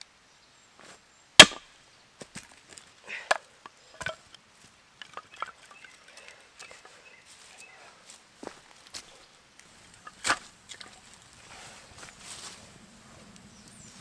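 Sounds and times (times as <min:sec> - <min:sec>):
axe chopping wood: 0:01.4 - 0:01.6.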